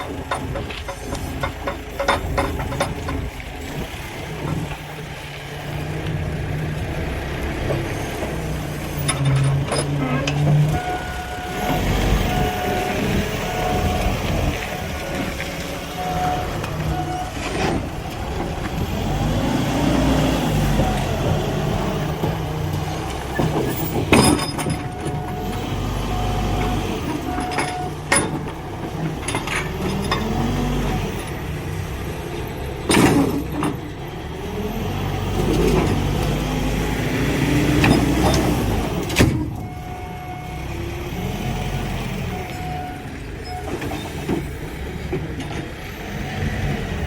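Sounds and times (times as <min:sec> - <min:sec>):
engine revving: 0:05.7 - 0:27.3, 0:34.1 - 0:39.3.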